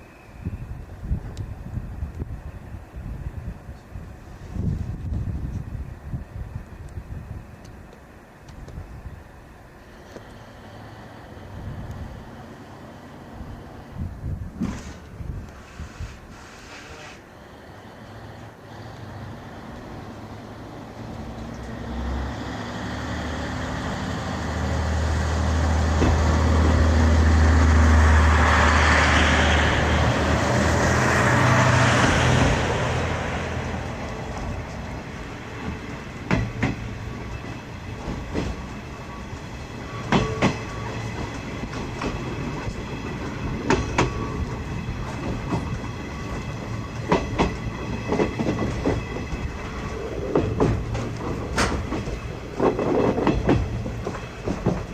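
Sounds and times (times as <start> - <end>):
train coach rumbling on rails: 0.0 - 54.9
wheels clacking over rail joints: 30.5 - 54.9.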